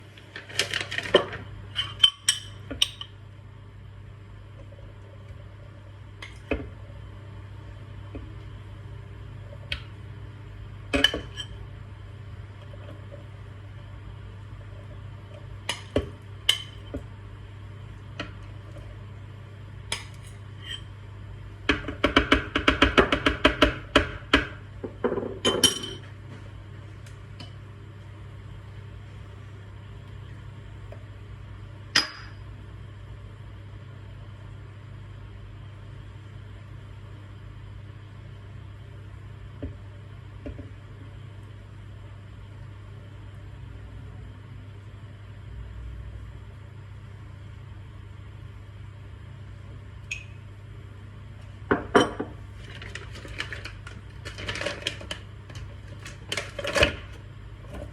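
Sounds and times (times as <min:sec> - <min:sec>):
steady low hum: 0:00.0 - 0:57.9
glass and kitchenware clinking: 0:25.4 - 0:26.0.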